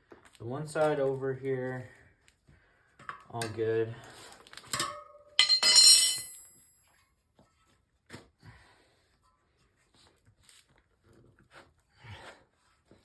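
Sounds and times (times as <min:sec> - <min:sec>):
metal tire irons clanking: 0:04.8 - 0:06.5.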